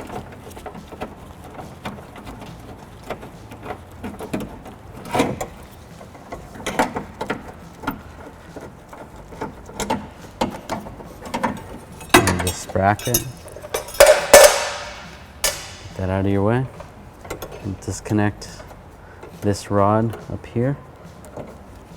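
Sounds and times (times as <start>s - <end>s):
hand ratchet clicking: 1.8s - 16.3s
metal knocks: 11.4s - 16.2s.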